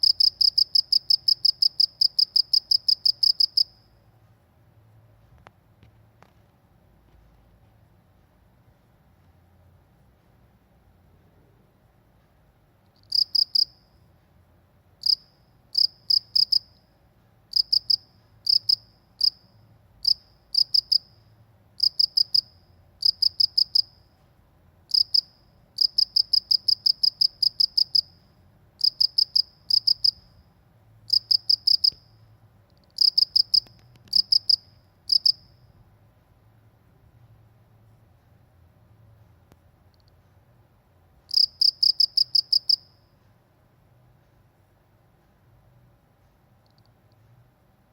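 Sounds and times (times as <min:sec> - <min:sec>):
cricket chirping: 0:00.0 - 0:04.0, 0:13.0 - 0:14.0, 0:15.0 - 0:24.1, 0:24.9 - 0:30.5, 0:31.1 - 0:35.7, 0:41.3 - 0:43.1
faint low hum: 0:00.0 - 0:47.9.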